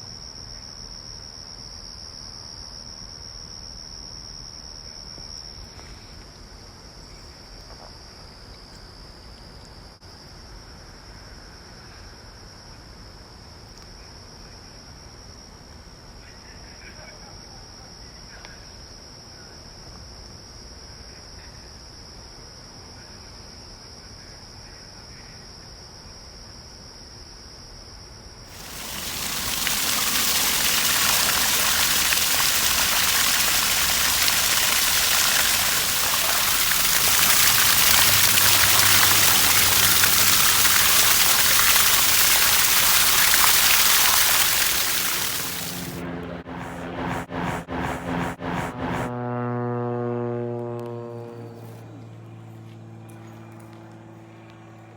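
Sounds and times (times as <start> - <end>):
high insect trill: 28.5 - 45.9
rushing hiss of gushing water: 28.5 - 46.0.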